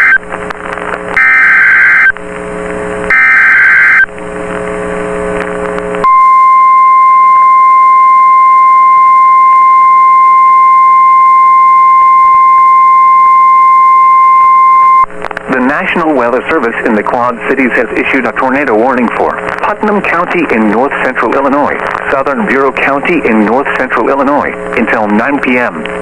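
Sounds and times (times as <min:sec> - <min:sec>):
steady piercing alarm tone: 0:01.2 - 0:02.1, 0:03.1 - 0:04.1, 0:06.0 - 0:15.1
warbling digital data bursts: 0:01.2 - 0:02.1, 0:03.1 - 0:04.1
radio hiss: 0:03.1 - 0:04.1, 0:15.4 - 0:26.0.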